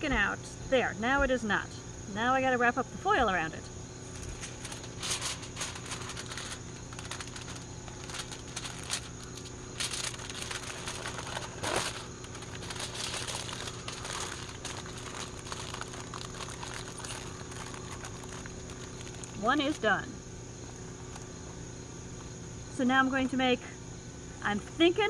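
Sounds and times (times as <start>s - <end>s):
aluminium foil crumpling: 4.1s - 19.9s.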